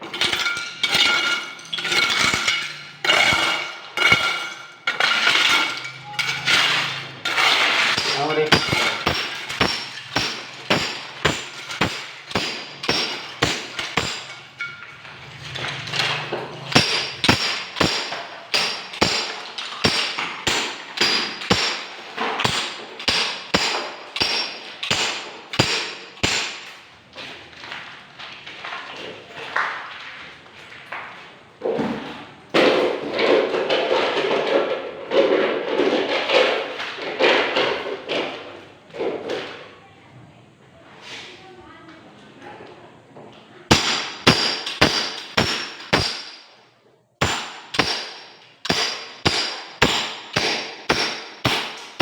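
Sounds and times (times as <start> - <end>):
hammer blows ringing metal: 7.8 - 14.4, 16.6 - 26.7, 43.7 - 46.6, 47.2 - 52.0.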